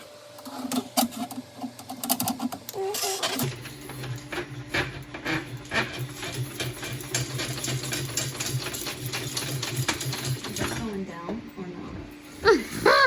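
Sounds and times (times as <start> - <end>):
drain tool whirring with rapid clicking: 0.3 - 13.0.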